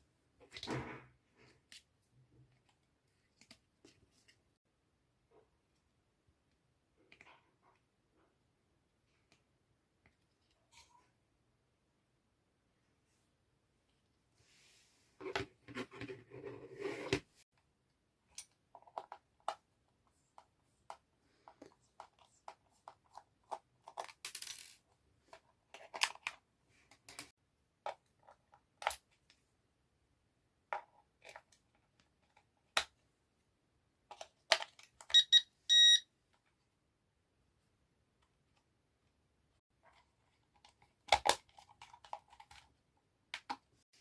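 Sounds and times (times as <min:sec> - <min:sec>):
short high electronic beeps: 0:35.1 - 0:36.0.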